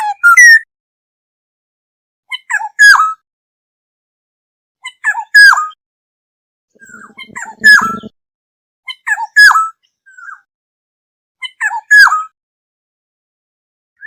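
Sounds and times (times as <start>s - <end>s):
harsh buzzy rasp: 6.8s - 8.1s
oriole calling: 6.8s - 8.1s.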